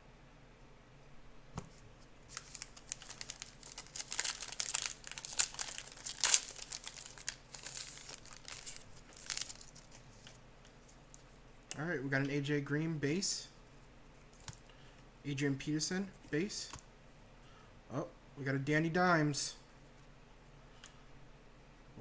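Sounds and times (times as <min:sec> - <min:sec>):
wrapper crinkling and tearing: 0:02.3 - 0:10.4.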